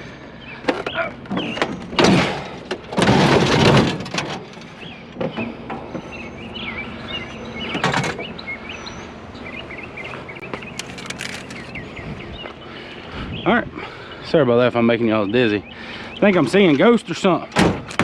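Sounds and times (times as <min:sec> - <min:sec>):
small birds chirping: 0:00.0 - 0:02.0, 0:04.6 - 0:17.5
steady low hum: 0:00.0 - 0:16.9
loud noisy rustling: 0:01.4 - 0:04.8, 0:10.7 - 0:11.7.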